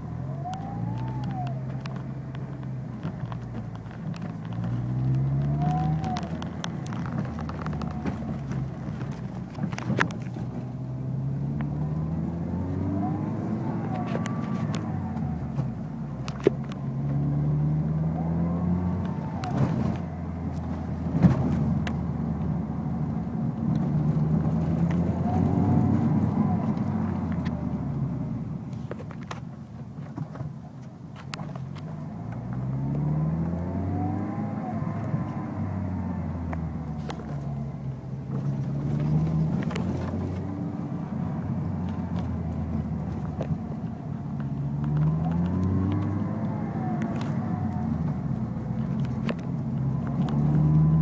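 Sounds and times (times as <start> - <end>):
car engine revving: 0.0 - 28.5, 31.9 - 51.0
thin whistle rising and falling: 0.3 - 1.7.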